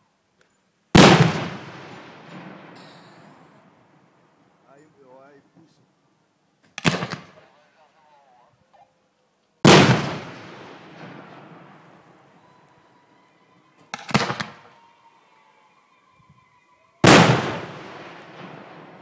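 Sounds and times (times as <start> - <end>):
fireworks booming: 1.0 - 4.4, 9.6 - 12.4, 17.0 - 19.0
fireworks crackling: 1.0 - 5.0, 9.6 - 14.7, 17.0 - 19.0.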